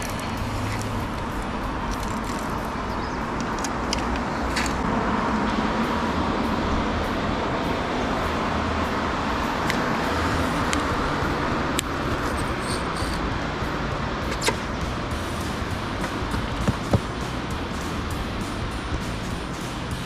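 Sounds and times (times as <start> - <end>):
wind and water noise: 0.0 - 17.9.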